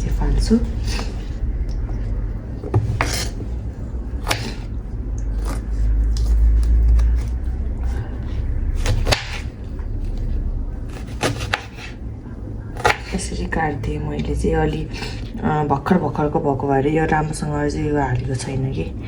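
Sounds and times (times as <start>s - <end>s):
steady low rumble: 0.0s - 19.0s.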